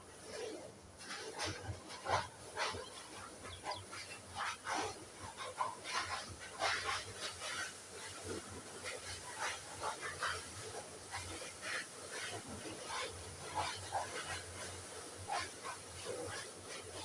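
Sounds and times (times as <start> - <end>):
canary singing: 2.8 - 4.0.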